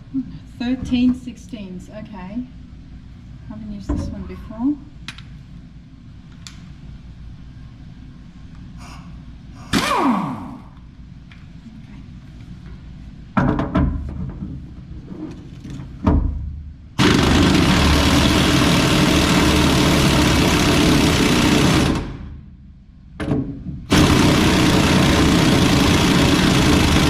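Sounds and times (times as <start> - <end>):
impact wrench hammering: 9.6 - 10.6, 17.0 - 22.1, 23.2 - 27.0.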